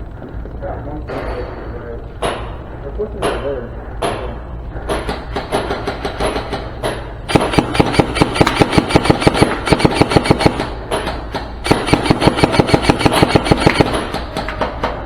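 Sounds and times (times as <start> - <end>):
airsoft guns firing rapidly: 5.0 - 14.8.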